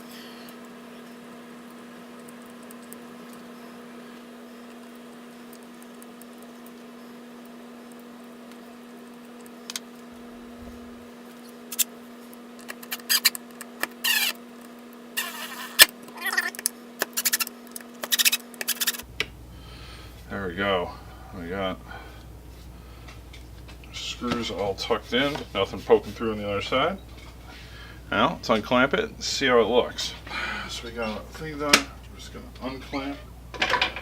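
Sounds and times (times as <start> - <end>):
steady low hum: 0.0 - 34.0
screws squeaking as driven: 12.8 - 13.4, 14.0 - 14.4, 15.2 - 19.0.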